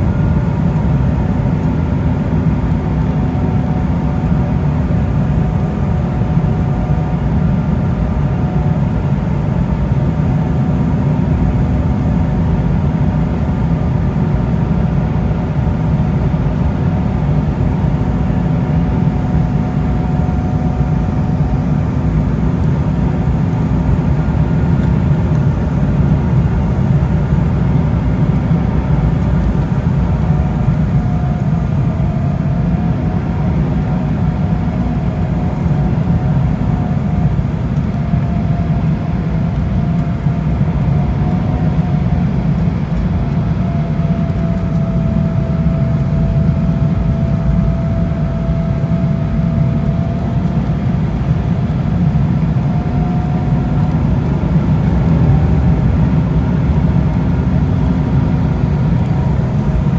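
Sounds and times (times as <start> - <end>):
airliner cabin engine noise: 0.0 - 59.9
faint steady whine: 15.7 - 59.9.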